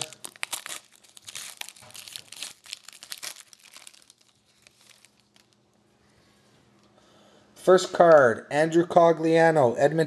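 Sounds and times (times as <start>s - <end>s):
wrapper crinkling and tearing: 0.0s - 5.7s.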